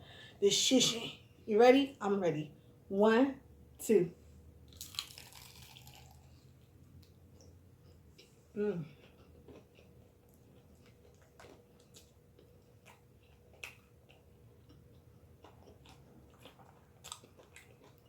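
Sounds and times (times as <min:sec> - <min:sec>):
chewing crunchy food: 0:04.7 - 0:18.0.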